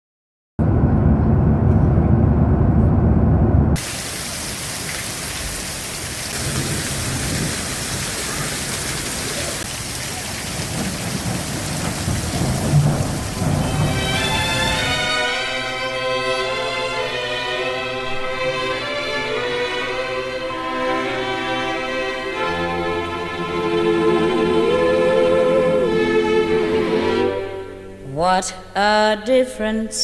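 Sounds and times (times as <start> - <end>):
thunder rumble: 0.6 - 15.2
heavy rain hiss: 3.8 - 27.5.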